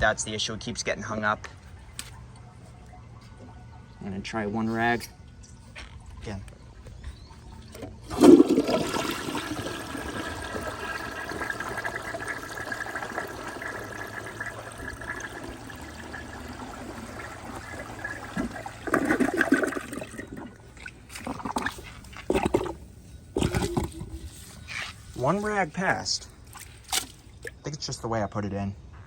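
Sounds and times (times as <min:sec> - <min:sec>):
toilet bowl siphoning: 0:07.6 - 0:24.4
toilet flushing: 0:07.8 - 0:24.0
water rushing: 0:08.1 - 0:21.6.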